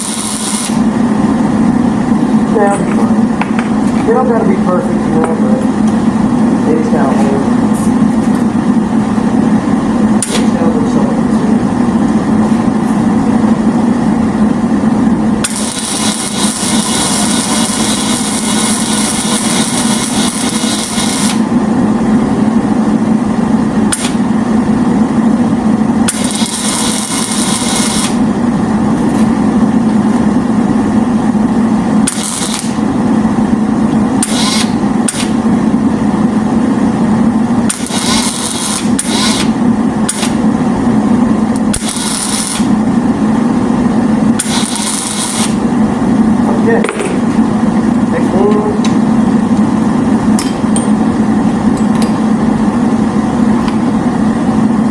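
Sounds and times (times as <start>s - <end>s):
welding crackling hiss: 0.0s - 0.9s, 15.4s - 21.5s, 26.1s - 28.3s, 32.0s - 32.9s, 34.2s - 35.4s, 37.7s - 40.4s, 41.6s - 42.8s, 44.4s - 45.6s
steady machine hum: 0.0s - 54.9s.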